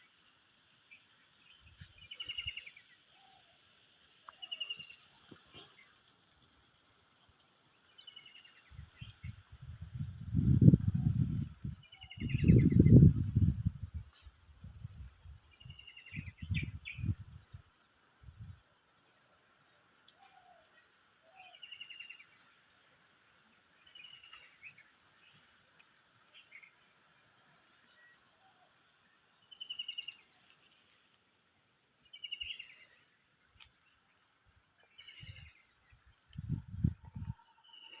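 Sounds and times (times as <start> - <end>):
high insect chorus: 0.0 - 38.0.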